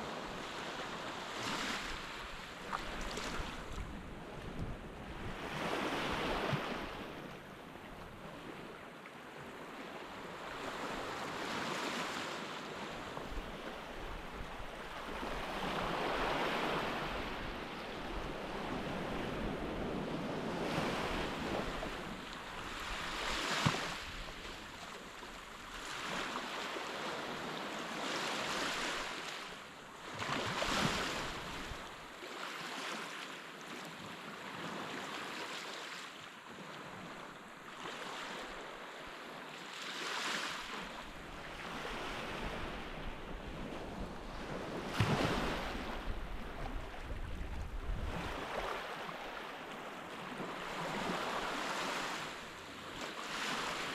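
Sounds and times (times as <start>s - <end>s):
waves breaking on beach: 0.0s - 7.4s, 9.4s - 53.9s
light wind rush: 41.3s - 49.4s.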